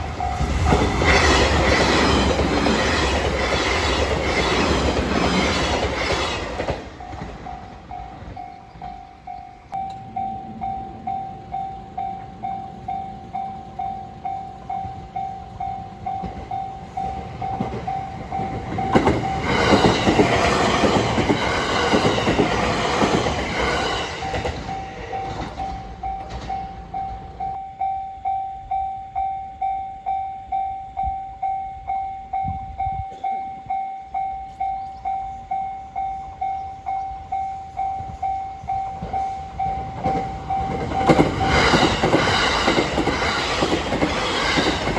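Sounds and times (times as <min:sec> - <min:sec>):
train passing: 0:00.0 - 0:44.9
level crossing bell ringing: 0:07.0 - 0:19.7.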